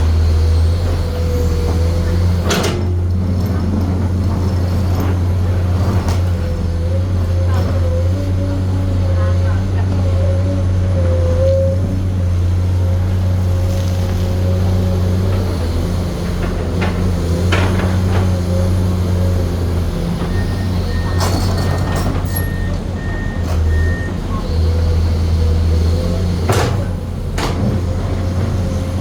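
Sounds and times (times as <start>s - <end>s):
excavator diesel engine running: 0.0s - 29.0s
short warning beeps: 20.4s - 24.5s.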